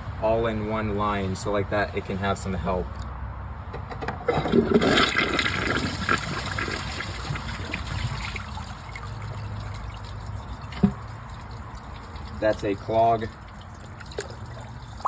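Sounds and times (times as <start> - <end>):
toilet flushing: 4.3 - 13.2
water washing in toilet bowl: 4.3 - 15.0.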